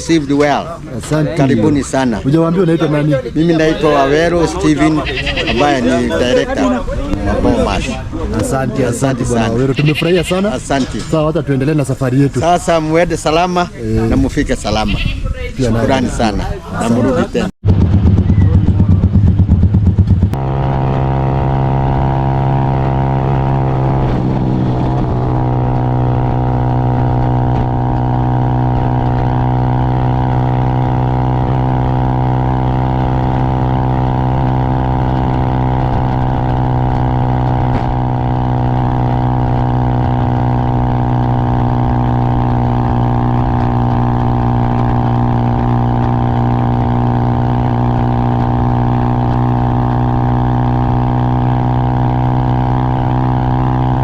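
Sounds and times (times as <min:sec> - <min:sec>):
motorcycle engine running: 0:17.6 - 0:54.0.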